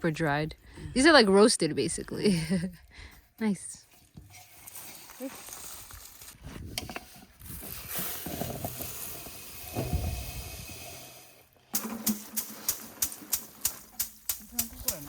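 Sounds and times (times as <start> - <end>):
dry stalks rustling and crackling: 3.9 - 9.6, 11.4 - 15.0
sharp regular taps: 11.9 - 15.0.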